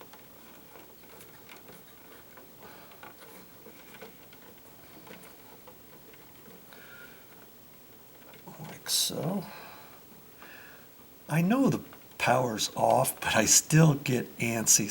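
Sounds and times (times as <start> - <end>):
electrical wires clicking: 0.0 - 9.3.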